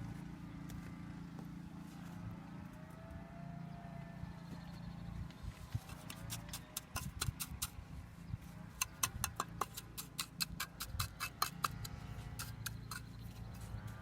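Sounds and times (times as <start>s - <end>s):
hard tool tapping hard surface: 8.8s - 11.8s.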